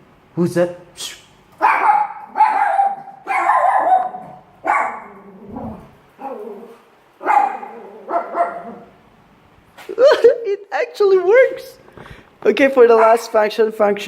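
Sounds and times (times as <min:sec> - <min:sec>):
dog barking: 0:01.6 - 0:05.2, 0:07.2 - 0:08.9.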